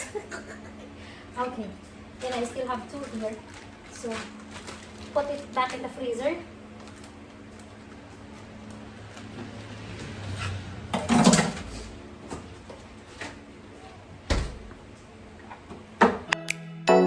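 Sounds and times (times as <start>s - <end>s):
freezer door clatter: 10.5s - 12.6s, 14.2s - 14.9s.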